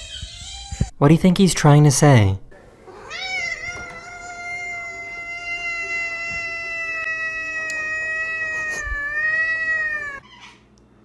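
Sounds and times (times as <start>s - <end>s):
cat giving high-pitched squeaky cry: 0.0s - 0.9s, 3.0s - 10.6s.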